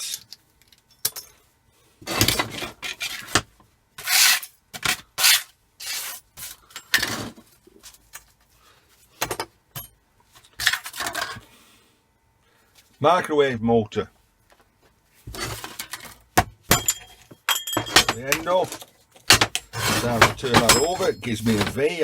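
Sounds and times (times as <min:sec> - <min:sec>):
hand scraping scrap metal: 0:00.0 - 0:00.3, 0:04.0 - 0:07.4, 0:15.3 - 0:22.0.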